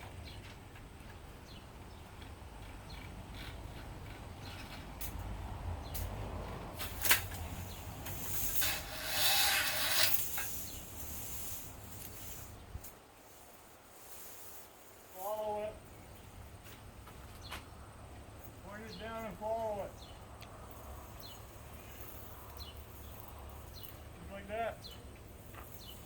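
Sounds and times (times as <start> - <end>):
metal hose sheath scraping: 6.8 - 12.6.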